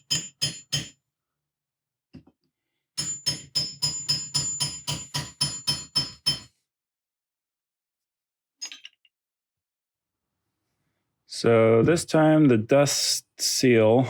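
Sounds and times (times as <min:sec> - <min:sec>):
hammer striking metal: 0:00.0 - 0:00.9, 0:03.0 - 0:06.5.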